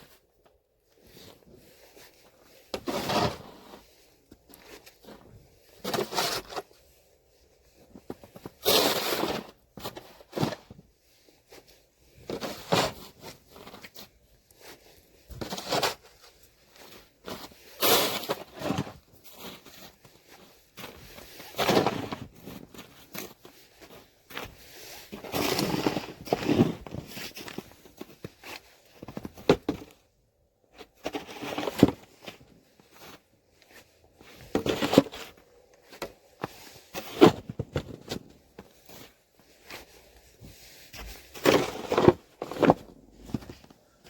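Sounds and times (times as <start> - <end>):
snow shovel scraping snow: 1.1 - 4.2, 4.8 - 6.7, 8.4 - 10.7, 12.3 - 13.8, 15.4 - 16.1, 17.4 - 20.0, 20.9 - 23.7, 24.6 - 27.9, 31.0 - 32.2, 36.4 - 37.5, 39.9 - 43.5.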